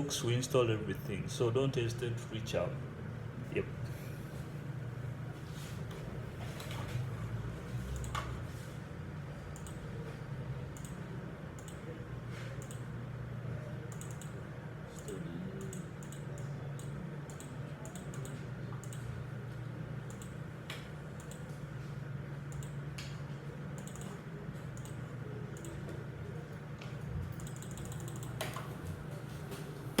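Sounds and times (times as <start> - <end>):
steady low hum: 0.0 - 30.0
keyboard and mouse clicks: 7.9 - 8.4, 9.6 - 9.8, 10.8 - 11.0, 11.6 - 11.8, 12.6 - 12.8, 13.9 - 14.4, 15.0 - 19.0, 20.1 - 21.5, 22.5 - 23.2, 23.8 - 24.2, 24.8 - 25.0, 27.3 - 28.7.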